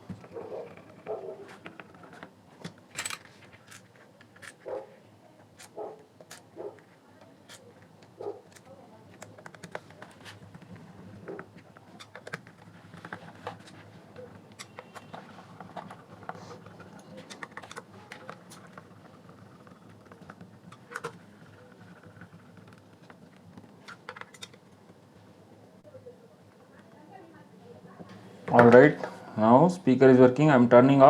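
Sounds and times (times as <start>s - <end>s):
screwdriver clicking on plastic: 5.6s - 6.5s, 14.5s - 21.2s.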